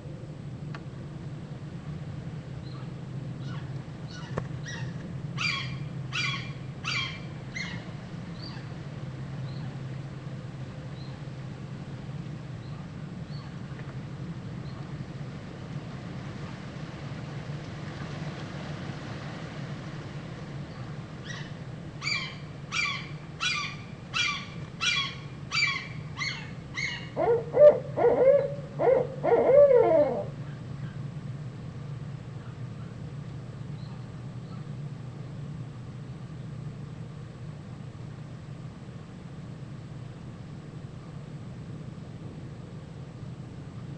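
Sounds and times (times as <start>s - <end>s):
steady low hum: 0.0s - 43.9s
bird calling harsh notes: 3.4s - 8.7s, 21.2s - 30.4s.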